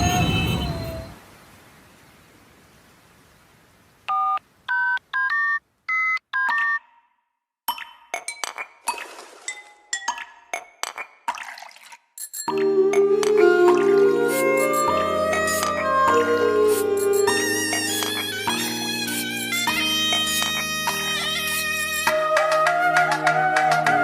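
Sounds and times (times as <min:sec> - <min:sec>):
music: 0:12.5 - 0:24.0.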